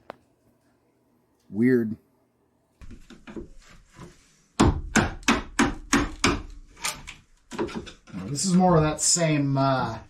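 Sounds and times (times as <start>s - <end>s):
soft knocks and scraping: 2.8s - 4.4s
hammer striking wood: 4.6s - 6.6s.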